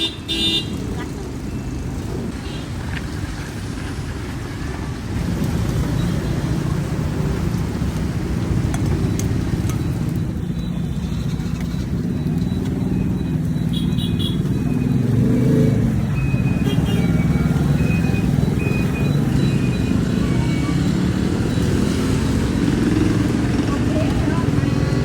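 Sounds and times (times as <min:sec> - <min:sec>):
motorbike engines rumbling: 0:00.0 - 0:25.0
motorbike engine revving: 0:05.0 - 0:25.0.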